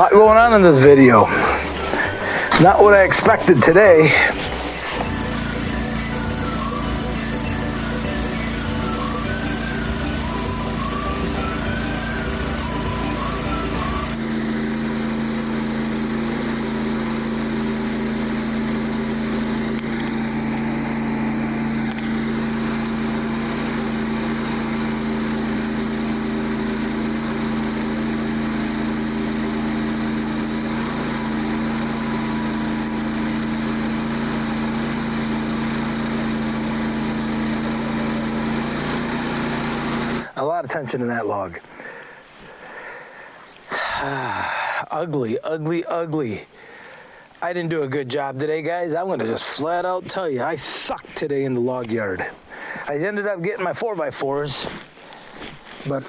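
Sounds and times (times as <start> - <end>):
small gasoline engine running: 0.0 - 40.4, 41.7 - 44.8.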